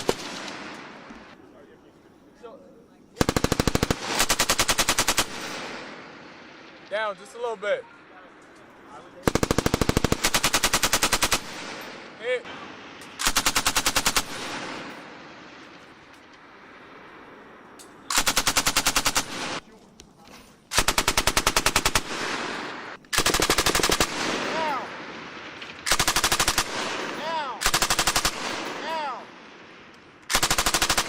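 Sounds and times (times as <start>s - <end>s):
machine gun firing bursts: 0.0s - 0.7s, 3.2s - 6.1s, 9.2s - 12.0s, 13.2s - 15.2s, 18.1s - 19.6s, 20.7s - 29.7s, 30.3s - 31.0s.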